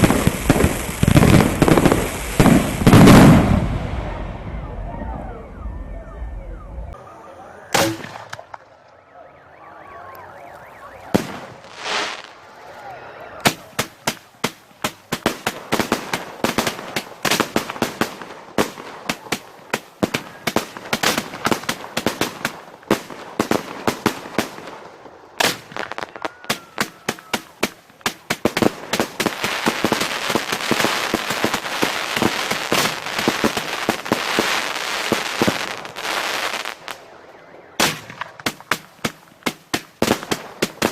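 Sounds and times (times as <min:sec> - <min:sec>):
firework cracks and pops: 0:00.0 - 0:03.6, 0:13.4 - 0:37.2, 0:37.8 - 0:40.9
firework bang: 0:00.0 - 0:04.8, 0:37.7 - 0:40.9
firework whoosh: 0:00.0 - 0:04.8, 0:11.0 - 0:14.3.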